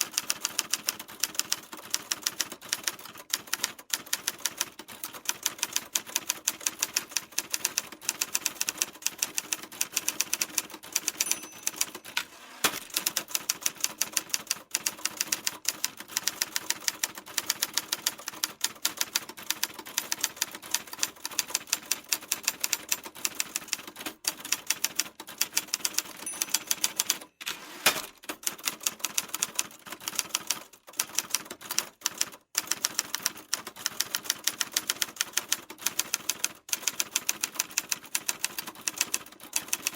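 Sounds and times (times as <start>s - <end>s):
typewriter keys striking: 10.0s - 15.5s.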